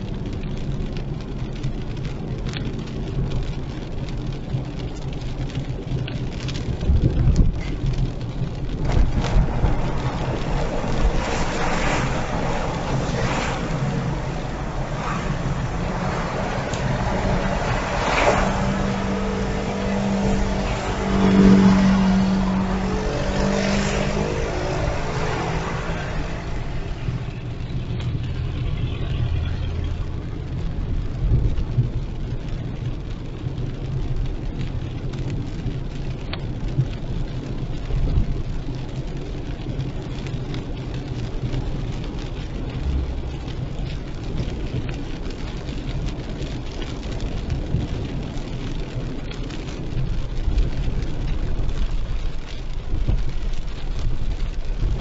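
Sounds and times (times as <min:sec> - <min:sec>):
car engine and tyres on wet road: 0:00.0 - 0:55.0
heavy rain hiss: 0:07.0 - 0:32.7, 0:37.7 - 0:55.0.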